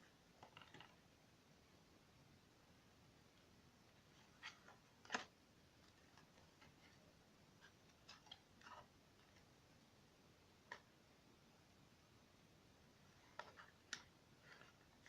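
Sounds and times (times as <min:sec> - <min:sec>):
faint sharp clicks and taps: 0:10.6 - 0:11.0, 0:13.1 - 0:15.0.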